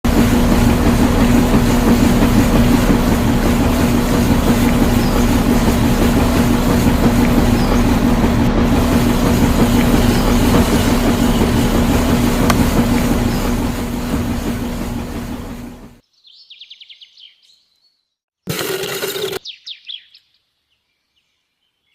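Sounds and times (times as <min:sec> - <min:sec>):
mechanical running noise with hum: 0:00.0 - 0:16.0.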